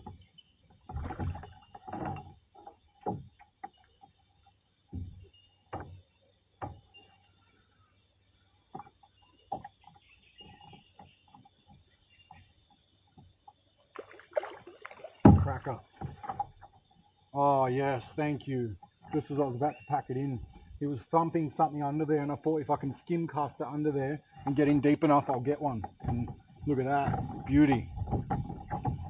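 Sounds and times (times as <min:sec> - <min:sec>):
knocks on kayak hull: 0:15.2 - 0:16.6.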